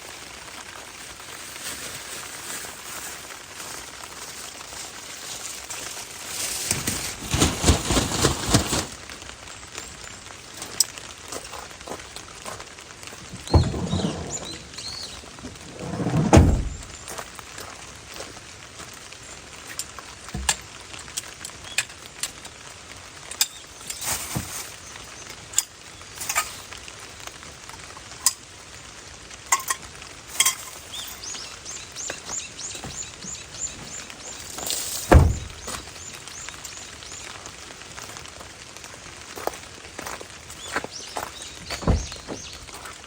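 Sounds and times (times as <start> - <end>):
steady rain hiss: 0.0 - 43.0
heavy thump: 13.3 - 17.0, 35.1 - 35.8, 41.7 - 42.6
camping gear clicks and clinks: 29.5 - 31.5.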